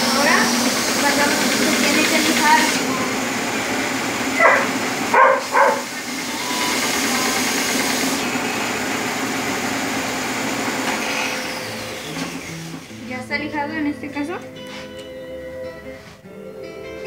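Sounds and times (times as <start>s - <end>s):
power tool motor sanding wood: 0.0s - 13.0s.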